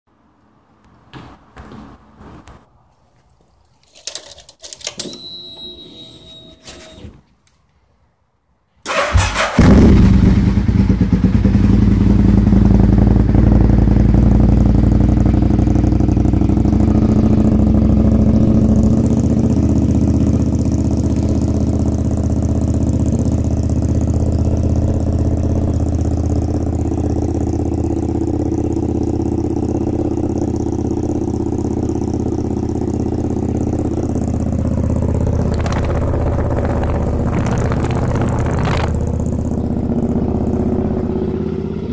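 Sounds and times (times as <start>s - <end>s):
motorcycle engine idling: 9.3s - 41.9s.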